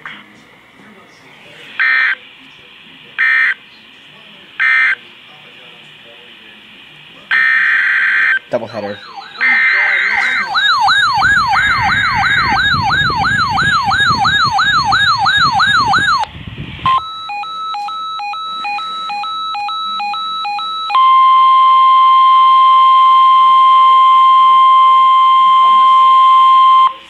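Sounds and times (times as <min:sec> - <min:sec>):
alternating beeping tones: 0:07.3 - 0:16.3, 0:16.9 - 0:27.0
steady alert tone: 0:07.4 - 0:16.3
warbling siren-like tone: 0:07.4 - 0:16.3.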